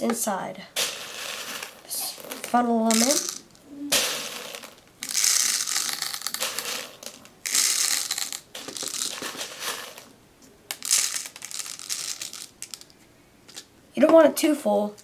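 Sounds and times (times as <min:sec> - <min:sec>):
bbs rattling into container: 0:02.3 - 0:03.6, 0:04.3 - 0:10.1, 0:10.7 - 0:13.0.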